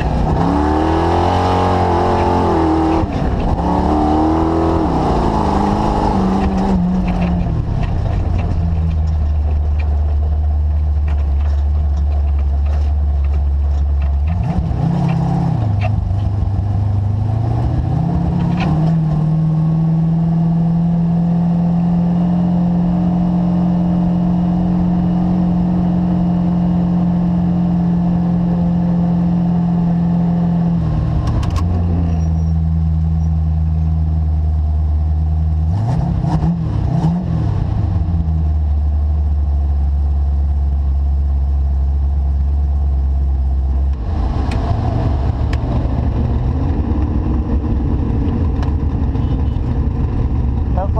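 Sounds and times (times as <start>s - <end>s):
vehicle engine running: 0.0s - 20.6s, 37.5s - 50.9s
knocks and rattles: 6.4s - 15.2s.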